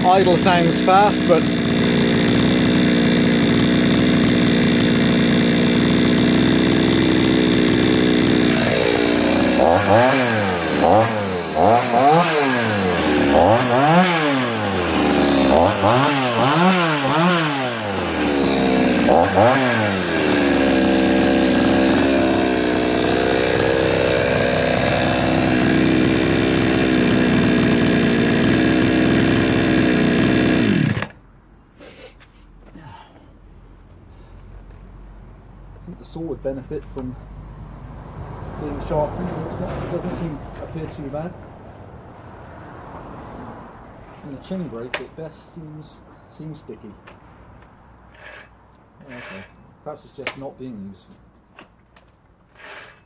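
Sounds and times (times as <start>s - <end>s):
chainsaw idling and revving: 0.0s - 31.2s, 48.1s - 49.6s, 52.5s - 53.0s.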